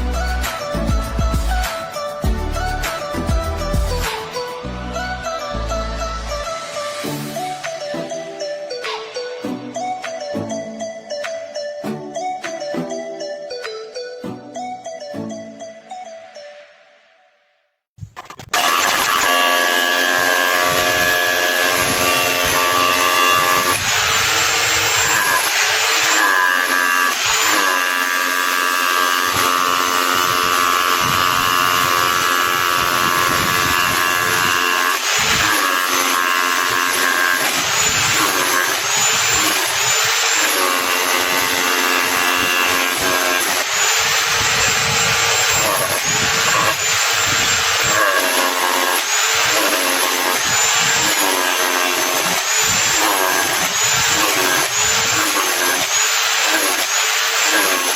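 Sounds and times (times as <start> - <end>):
rotary hammer motor running: 18.2 - 57.9.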